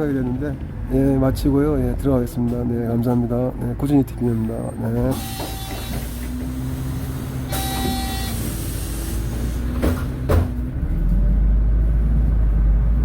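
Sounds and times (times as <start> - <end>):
bus engine and road rumble: 0.0 - 13.0.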